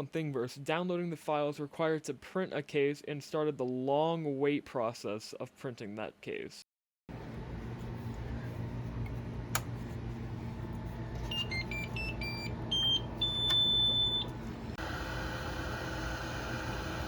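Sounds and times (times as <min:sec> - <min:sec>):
printer humming: 0:07.1 - 0:17.0.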